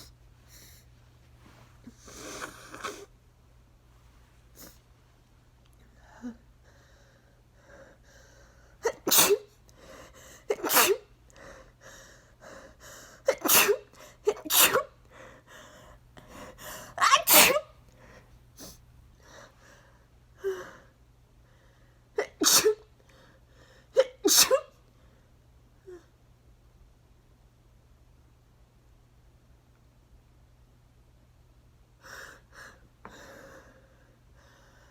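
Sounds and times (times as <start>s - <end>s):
loud sneezes: 8.8s - 9.6s, 10.5s - 11.1s, 13.3s - 15.0s, 16.9s - 17.8s, 22.2s - 22.9s, 24.0s - 24.8s.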